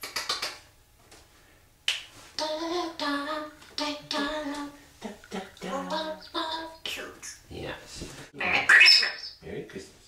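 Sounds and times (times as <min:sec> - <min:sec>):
parrot singing notes: 0:08.4 - 0:09.4.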